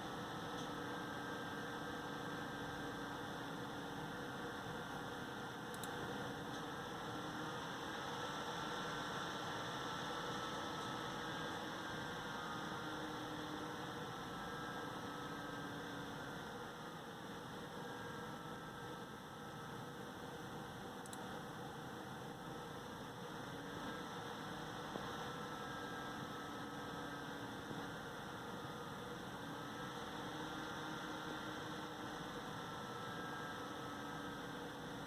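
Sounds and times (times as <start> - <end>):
cooling fan whirring: 0.0 - 35.0.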